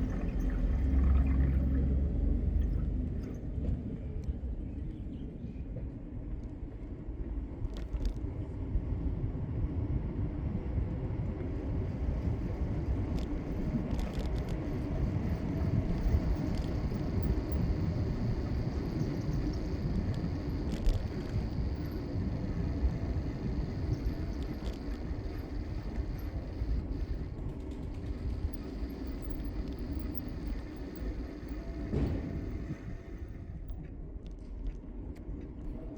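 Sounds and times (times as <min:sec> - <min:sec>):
low rumble of traffic: 0:00.0 - 0:35.9
bicycle clicks and rattles: 0:12.1 - 0:33.2.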